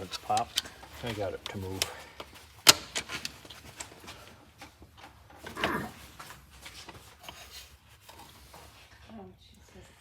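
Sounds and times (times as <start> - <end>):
metal parts clicking and knocking: 0.0 - 1.9, 2.6 - 3.9.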